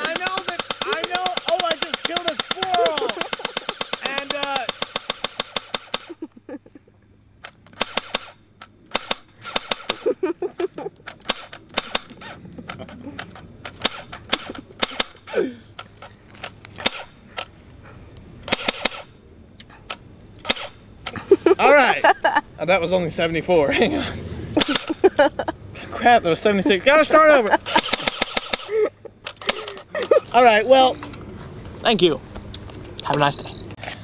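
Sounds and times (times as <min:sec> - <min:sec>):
gunshots: 0:00.0 - 0:06.2, 0:07.8 - 0:10.1, 0:11.2 - 0:12.4, 0:13.7 - 0:15.3, 0:16.8 - 0:17.1, 0:18.5 - 0:19.1, 0:24.6 - 0:25.0, 0:27.6 - 0:28.7.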